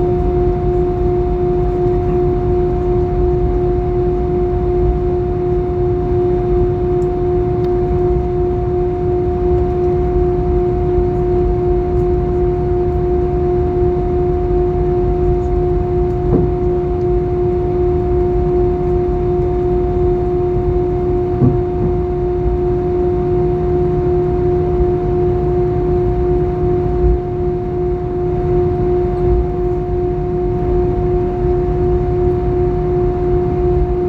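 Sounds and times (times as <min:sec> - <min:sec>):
jet engines rumbling in cabin: 0:00.0 - 0:34.0
faint knocks: 0:21.4 - 0:22.1.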